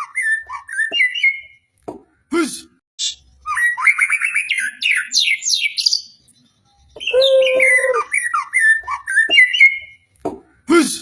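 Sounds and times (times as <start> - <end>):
songbird singing: 3.4 - 10.1.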